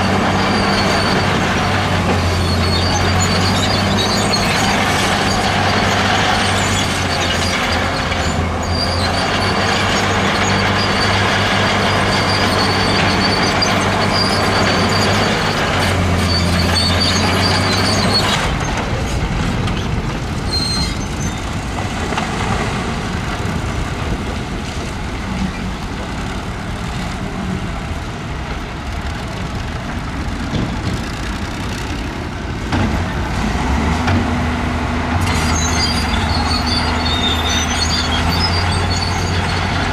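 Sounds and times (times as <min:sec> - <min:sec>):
high metallic squeal: 0:00.0 - 0:19.2, 0:19.8 - 0:22.4, 0:35.2 - 0:39.9
diesel machinery engine running: 0:00.0 - 0:39.9.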